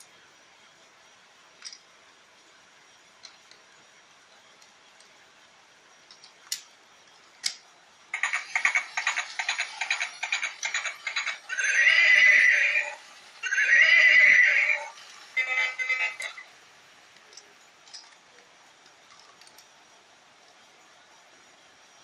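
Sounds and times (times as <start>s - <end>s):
horse whinnies: 11.5s - 14.9s.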